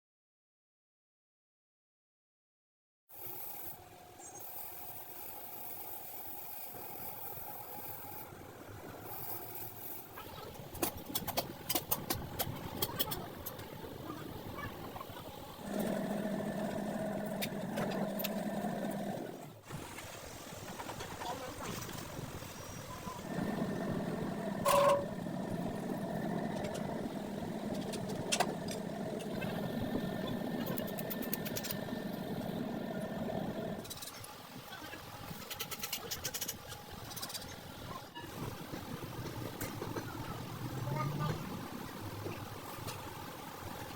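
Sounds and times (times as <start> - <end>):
steady background noise: 3.7 - 43.9
mechanical motor running: 11.1 - 20.0, 22.9 - 34.2.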